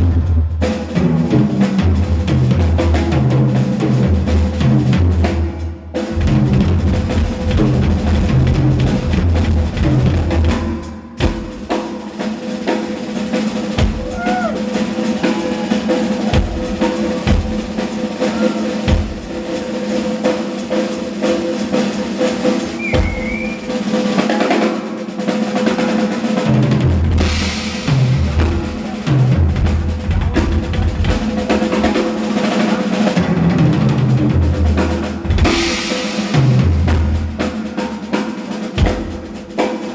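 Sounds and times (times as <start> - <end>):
drum kit solo: 0.0 - 39.9.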